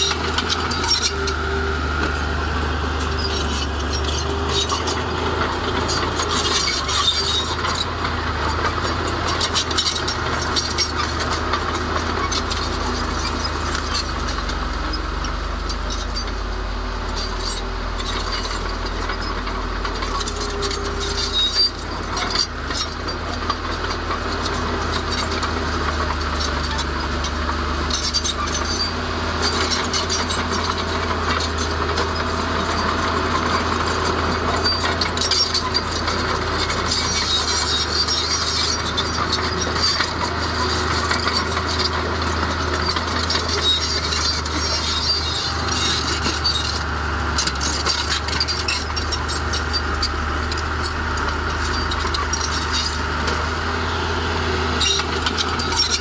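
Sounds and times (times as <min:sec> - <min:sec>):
heavy diesel machinery running: 0:00.0 - 0:56.0
metal and stone clattering: 0:51.6 - 0:53.0.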